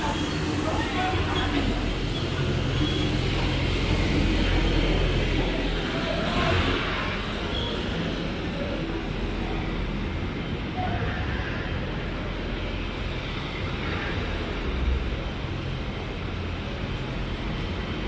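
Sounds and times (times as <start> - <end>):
distant voices: 0.0 - 10.9
low rumble of traffic: 0.0 - 18.0.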